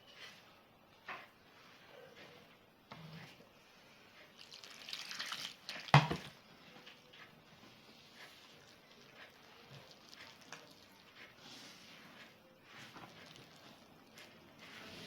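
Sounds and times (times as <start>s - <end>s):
water pouring into a bowl: 4.4s - 6.2s.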